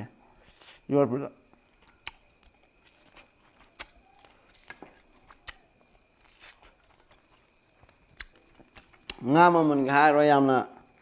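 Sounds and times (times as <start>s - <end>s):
mouth clicks and chewing: 1.5s - 9.3s.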